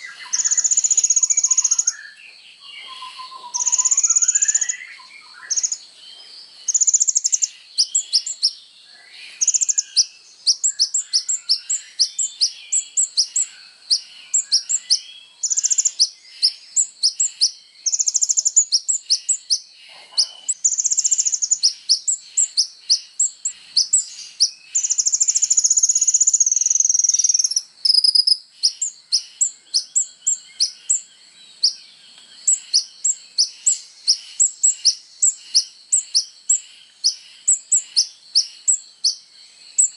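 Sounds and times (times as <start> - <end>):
bird chirping with buzzy trills: 0.0 - 39.9.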